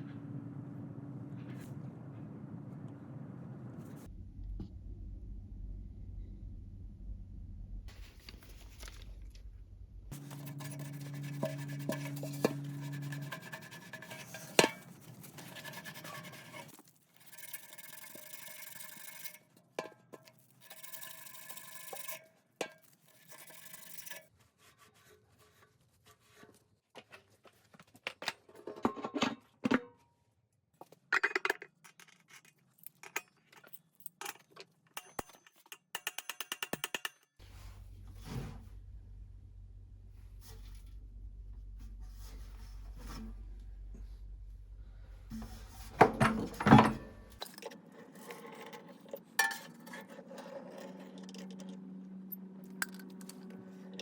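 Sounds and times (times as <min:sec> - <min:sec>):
low steady hum: 0:00.0 - 0:14.9, 0:37.4 - 0:47.5
hand tool scrapes and clinks: 0:10.1 - 0:24.3, 0:45.3 - 0:54.0.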